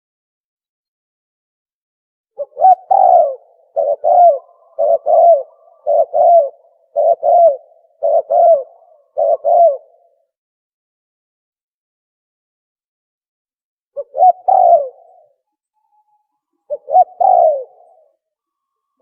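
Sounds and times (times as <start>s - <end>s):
dove cooing: 2.4s - 10.2s, 14.0s - 15.4s, 16.6s - 18.2s.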